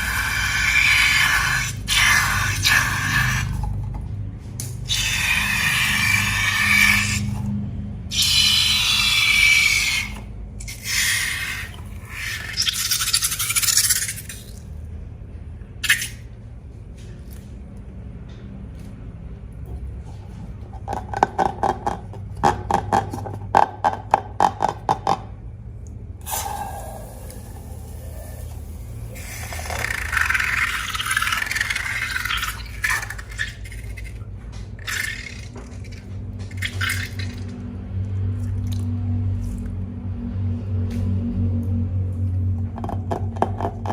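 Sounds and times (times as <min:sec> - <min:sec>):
slime squelching: 0:08.1 - 0:14.8, 0:26.2 - 0:39.8.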